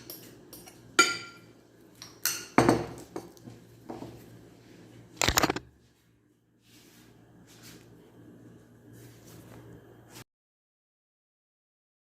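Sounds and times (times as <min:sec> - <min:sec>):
dishes and utensils clinking: 0:00.0 - 0:03.4.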